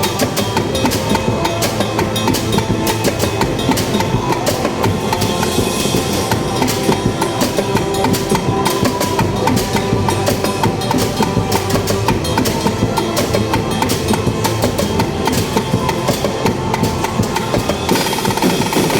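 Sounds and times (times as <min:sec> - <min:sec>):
drum band playing fast beat: 0:00.0 - 0:18.9.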